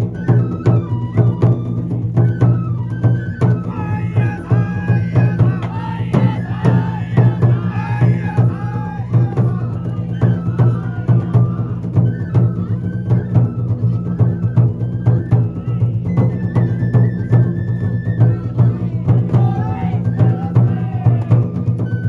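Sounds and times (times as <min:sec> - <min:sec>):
high flute melody: 0:00.0 - 0:22.0
drums in quick rhythm: 0:03.4 - 0:12.1.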